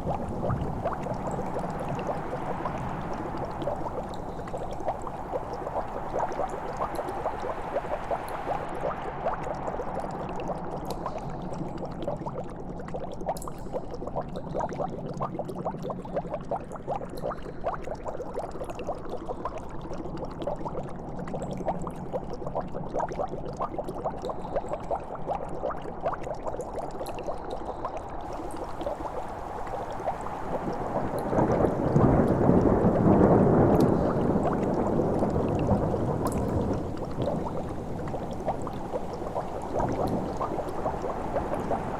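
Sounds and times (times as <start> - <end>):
liquid bubbling and gurgling: 0.0 - 41.9
low steady hum: 28.3 - 41.9.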